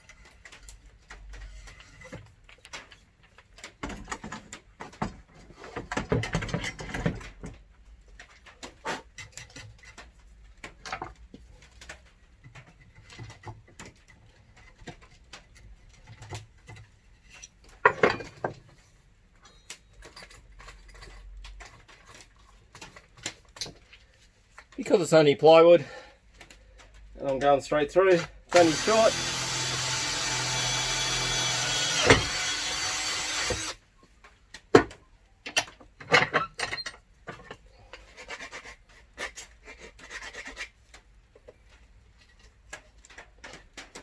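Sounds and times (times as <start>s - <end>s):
hand drill bit cutting wood: 28.1s - 33.8s.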